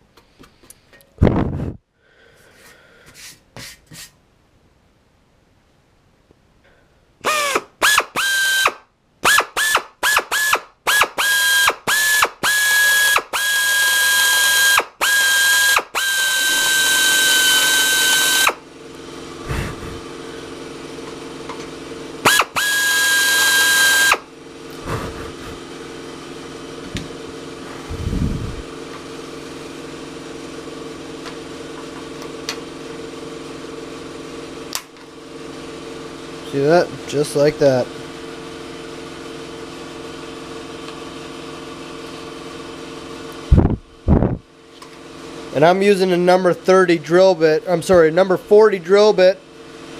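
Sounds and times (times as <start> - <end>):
drill whining: 7.2 - 18.6, 22.2 - 24.3
low machine hum: 12.8 - 49.9.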